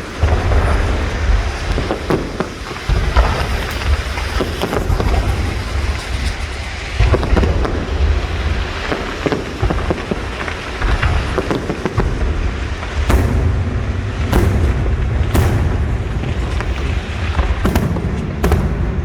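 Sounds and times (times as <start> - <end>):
fireworks crackles and pops: 0.0 - 19.0
low rumble of shell bursts: 11.9 - 19.0.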